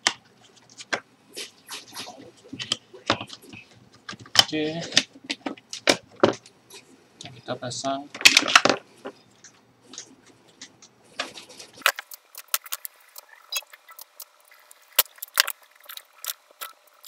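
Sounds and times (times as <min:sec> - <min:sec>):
small parts clicking and rattling: 0:09.4 - 0:17.0.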